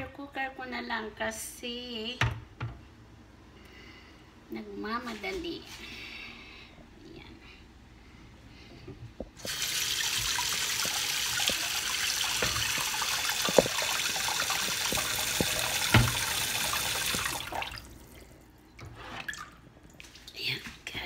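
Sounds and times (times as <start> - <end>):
tap water running onto pot: 9.4 - 18.0
pot knocking against sink: 12.3 - 16.3.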